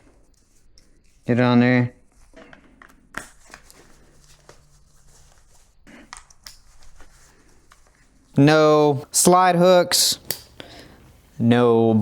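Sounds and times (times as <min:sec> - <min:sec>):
soft fabric rustling: 0:00.0 - 0:08.6.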